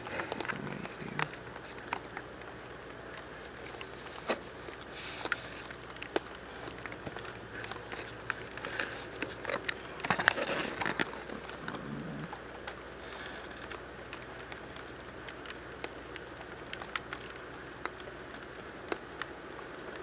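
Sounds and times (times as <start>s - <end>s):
raindrops pattering: 0.0s - 20.0s.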